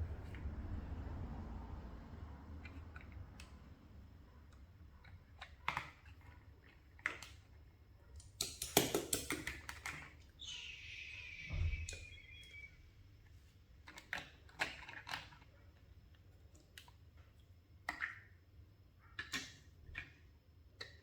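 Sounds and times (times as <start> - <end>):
short squeak: 10.4 - 12.8.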